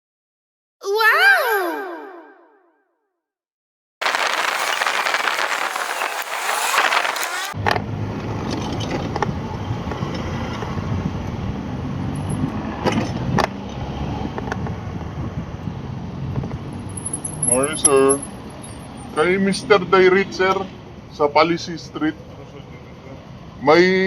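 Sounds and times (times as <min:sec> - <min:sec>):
loud hiss: 0:04.0 - 0:07.6.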